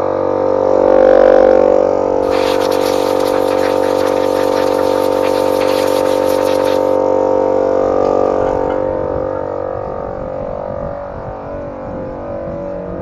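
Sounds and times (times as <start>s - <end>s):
saw cutting wood hiss: 2.2s - 7.0s.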